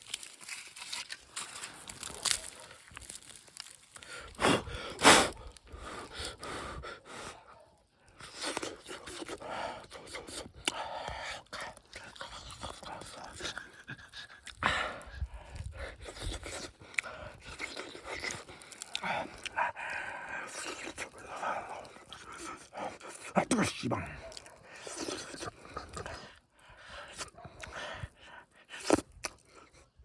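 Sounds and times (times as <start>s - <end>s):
person huffing and panting: 4.3s - 7.5s.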